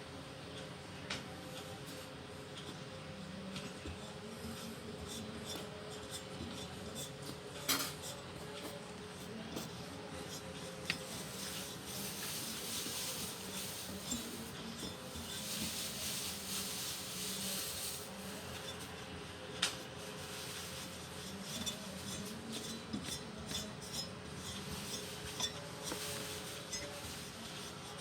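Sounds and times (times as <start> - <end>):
hands rubbing and scraping parts: 4.5 - 19.0.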